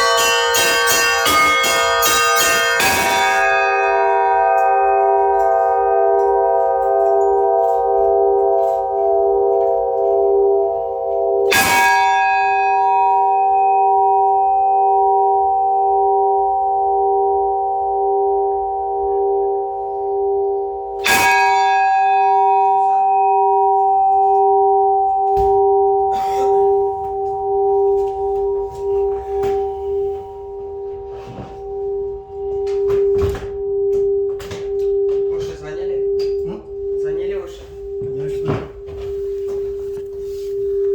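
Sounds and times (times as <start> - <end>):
church bell tolling: 0.0 - 40.9
low pulsing hum: 23.1 - 40.9.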